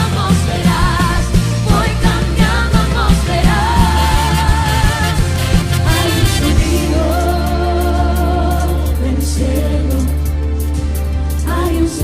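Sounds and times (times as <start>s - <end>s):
worship song with band: 0.0s - 12.0s.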